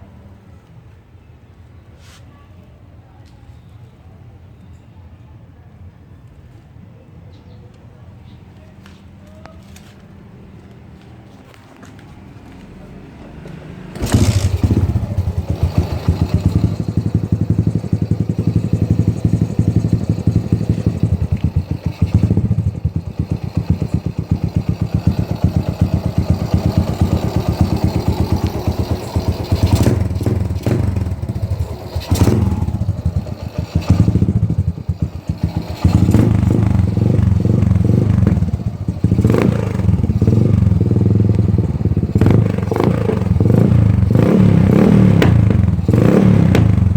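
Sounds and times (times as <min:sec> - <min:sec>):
motorcycle throttle blips: 0:12.6 - 0:46.9
motorcycle engine running: 0:13.5 - 0:46.9.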